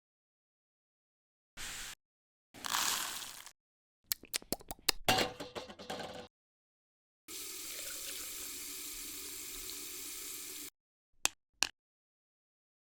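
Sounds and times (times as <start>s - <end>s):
water running from a tap: 7.3s - 10.7s.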